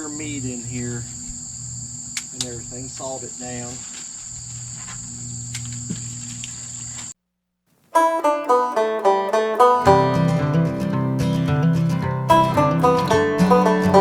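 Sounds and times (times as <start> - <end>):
low hum: 0.0 - 3.0
insects chirring: 0.0 - 7.2
plucked banjo music: 8.0 - 14.0.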